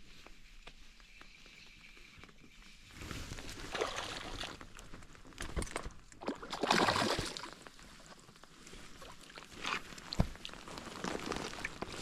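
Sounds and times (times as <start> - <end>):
fish splashing in water: 6.2 - 7.5.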